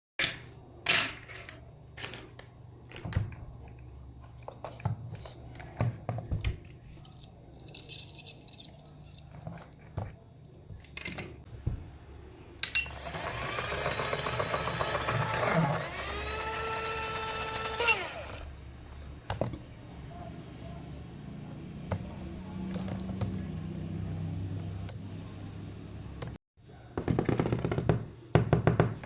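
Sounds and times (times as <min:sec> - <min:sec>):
electric motor whine: 0:12.9 - 0:18.6.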